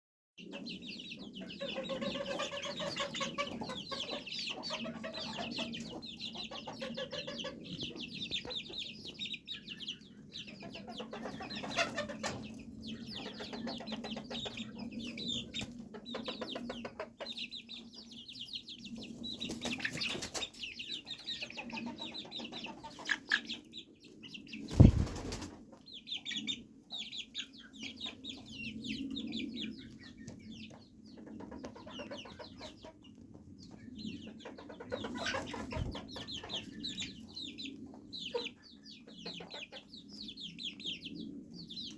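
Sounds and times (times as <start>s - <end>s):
chicken clucking: 0.4s - 41.9s
chicks peeping: 0.4s - 41.9s.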